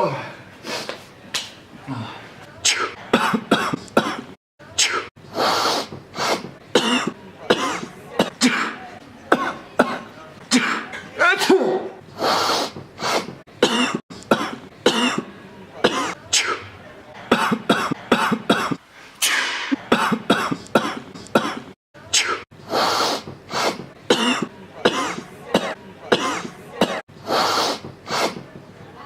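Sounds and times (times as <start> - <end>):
person sneezing: 2.6 - 8.8, 17.3 - 28.4
person coughing: 2.7 - 5.1, 6.8 - 11.9, 13.6 - 16.6, 17.3 - 18.8, 19.6 - 22.4, 24.1 - 27.0.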